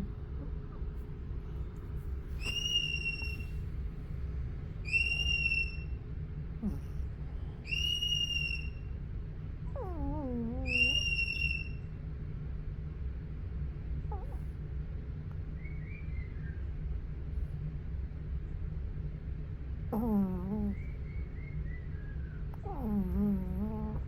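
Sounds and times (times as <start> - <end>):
dog whimpering: 2.4 - 3.5, 6.6 - 8.7, 9.6 - 11.8, 14.1 - 14.5, 19.9 - 20.9, 22.6 - 24.0
dog snoring with whistle: 6.6 - 7.0, 9.7 - 11.4, 19.9 - 20.9, 22.6 - 24.0.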